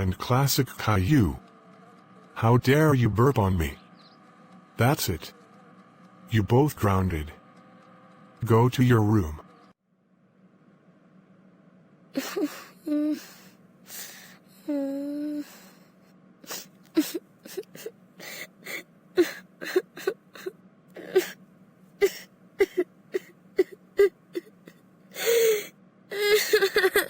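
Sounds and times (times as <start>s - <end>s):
cartoon child crying: 12.2s - 15.7s, 16.5s - 21.4s, 25.2s - 27.0s.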